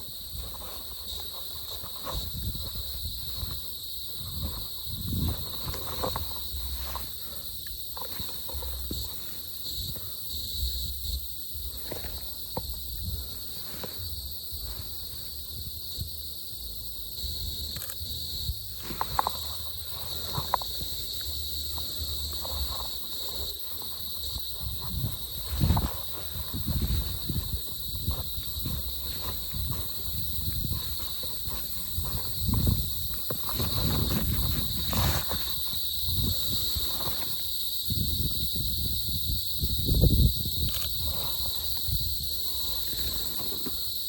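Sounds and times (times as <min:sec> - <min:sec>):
footsteps: 0:00.0 - 0:15.6, 0:17.6 - 0:37.4
high-pitched insect chorus: 0:00.0 - 0:44.0
small crunches and knocks: 0:18.6 - 0:37.3.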